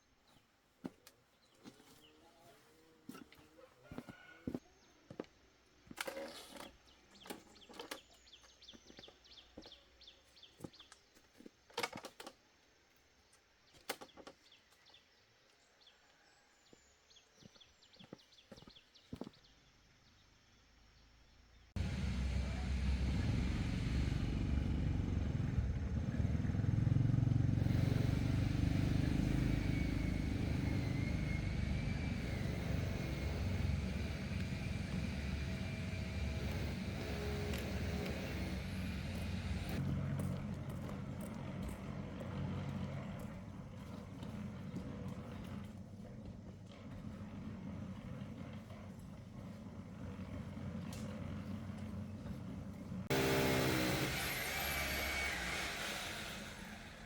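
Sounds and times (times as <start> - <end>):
motor vehicle rumble: 21.8 - 57.0.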